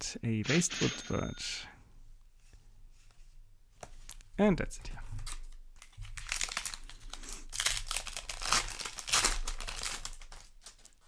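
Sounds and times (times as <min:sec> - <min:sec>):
foil wrapper crinkling: 0:05.2 - 0:11.0.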